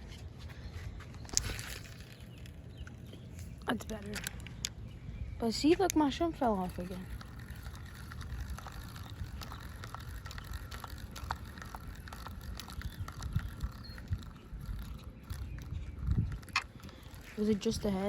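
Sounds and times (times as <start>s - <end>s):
fishing reel clicking: 6.7s - 17.9s.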